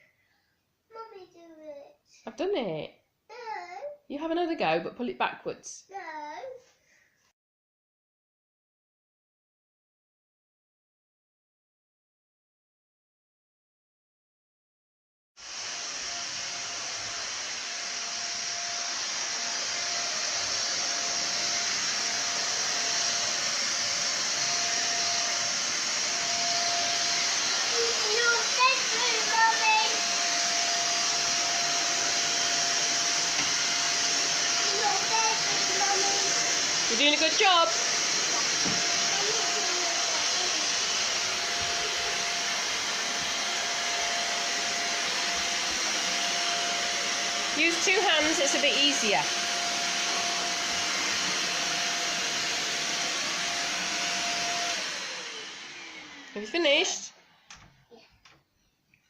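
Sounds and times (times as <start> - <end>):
vacuum cleaner running on carpet: 15.4 - 57.1.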